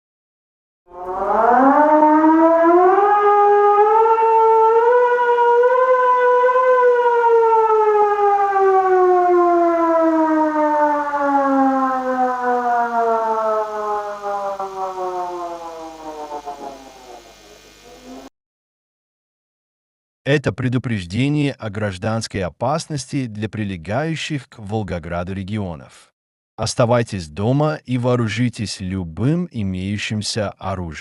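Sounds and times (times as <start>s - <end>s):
siren wailing: 0.9s - 18.3s.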